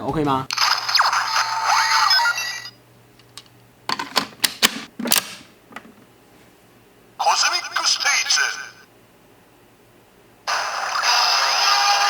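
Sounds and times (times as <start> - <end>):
toy electronic synth tones: 0.8 - 2.8
sharp plastic clicks: 3.2 - 5.5.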